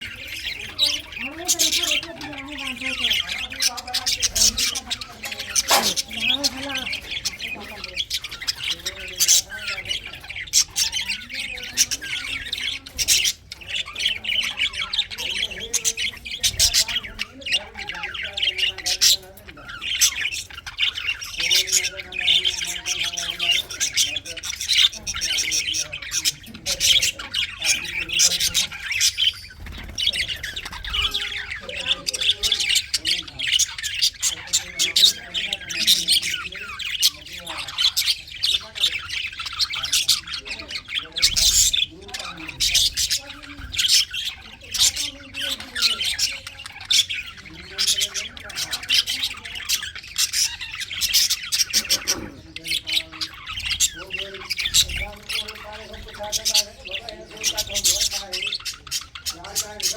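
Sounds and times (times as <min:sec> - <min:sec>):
budgerigars chattering and warbling: 0:00.0 - 0:59.9
sharp bird squawks: 0:03.7 - 0:06.5.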